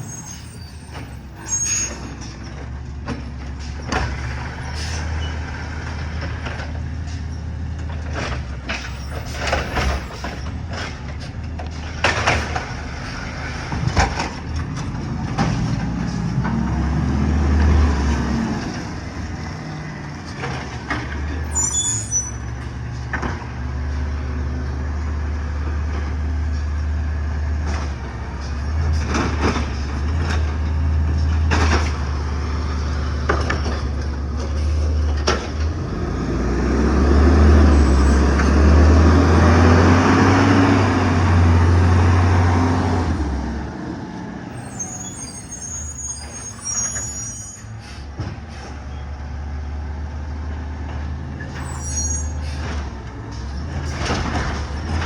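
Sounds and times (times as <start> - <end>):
high squeal: 0.0 - 2.3, 21.4 - 22.5, 37.6 - 38.4, 44.6 - 47.9, 51.5 - 52.6
diesel truck engine drone: 0.0 - 55.0
knocks and clanks: 7.8 - 13.0, 13.6 - 16.6, 27.6 - 32.2, 33.2 - 35.9, 52.5 - 55.0.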